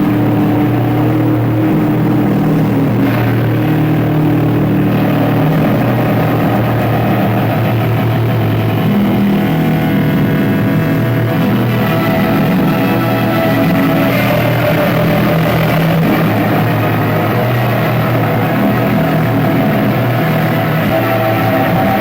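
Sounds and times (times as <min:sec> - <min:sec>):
distorted noise music: 0:00.0 - 0:22.0
low droning tones: 0:00.0 - 0:22.0.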